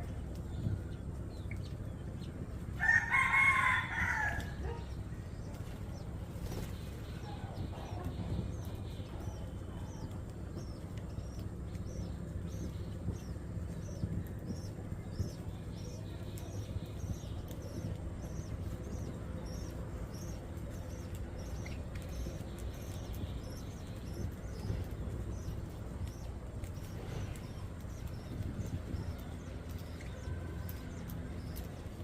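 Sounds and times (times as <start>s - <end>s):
small birds chirping: 0.0s - 32.0s
steady low rumble: 0.0s - 32.0s
faint clicks: 7.8s - 32.0s.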